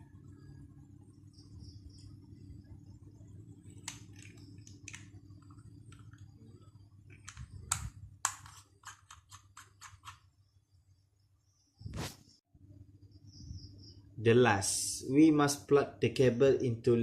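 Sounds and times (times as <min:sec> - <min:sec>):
faint low hum: 0:00.0 - 0:17.0
screwdriver and plastic parts clicking: 0:07.1 - 0:10.3.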